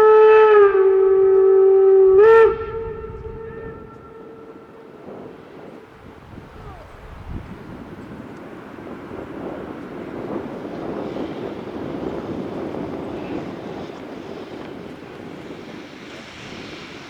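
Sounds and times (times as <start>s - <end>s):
model train rumbling on track: 0.0s - 17.0s.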